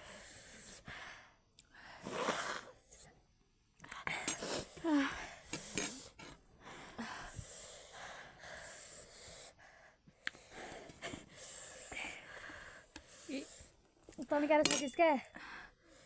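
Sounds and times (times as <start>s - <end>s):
person breathing hard: 0.0s - 3.0s, 3.9s - 13.9s, 15.3s - 16.0s
person sniffing: 2.0s - 2.7s.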